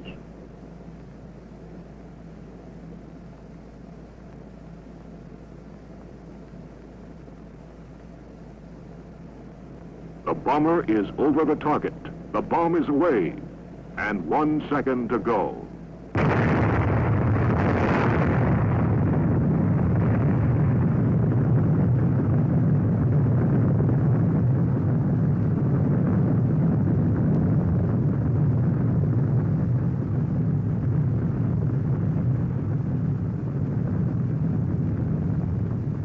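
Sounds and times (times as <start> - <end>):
explosion blast and rumbling roar: 14.1 - 36.0.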